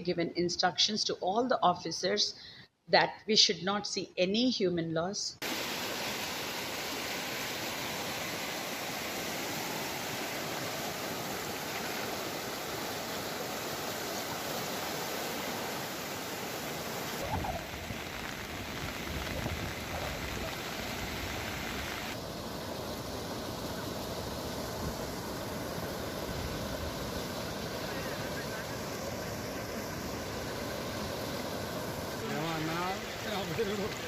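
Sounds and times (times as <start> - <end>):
rushing rain and floodwater: 5.4 - 34.0.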